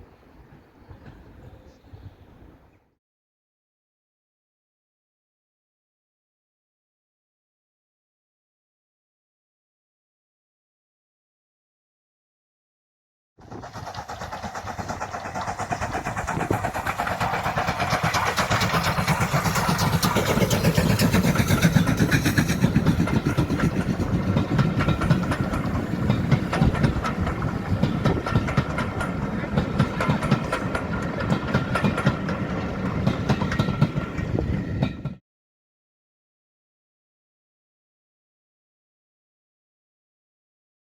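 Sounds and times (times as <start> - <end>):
train rumbling and clattering: 0.5 - 1.8, 13.4 - 35.2.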